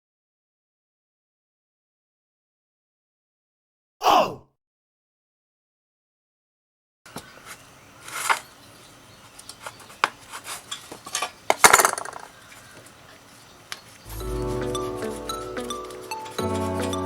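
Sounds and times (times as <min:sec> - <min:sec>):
small metal objects clinking: 0:10.7 - 0:12.4
background music: 0:14.1 - 0:17.0.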